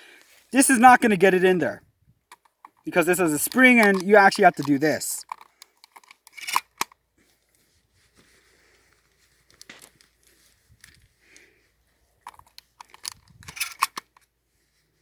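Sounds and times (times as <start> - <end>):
shotgun shells clicking into magazine: 2.3 - 7.0, 12.2 - 14.2.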